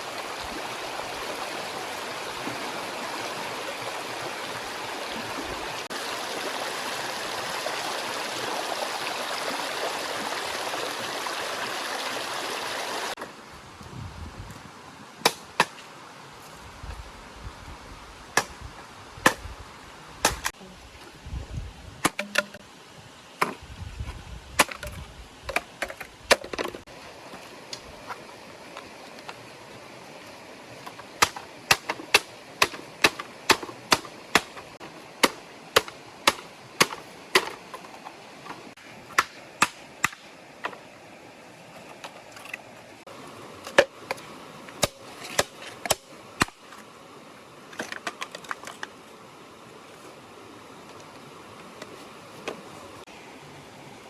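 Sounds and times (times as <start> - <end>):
stream flowing: 0.0 - 13.8, 22.0 - 54.0
sharp chopping knocks: 20.2 - 20.5.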